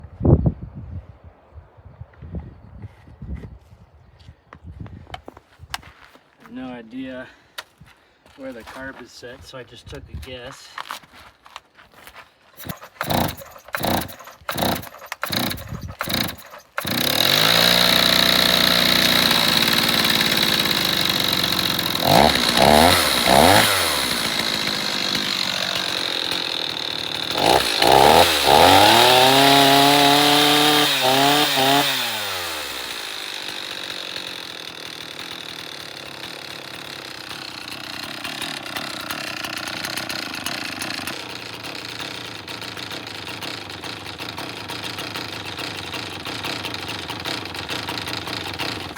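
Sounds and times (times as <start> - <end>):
chainsaw engine sputtering and revving: 12.6 - 48.9.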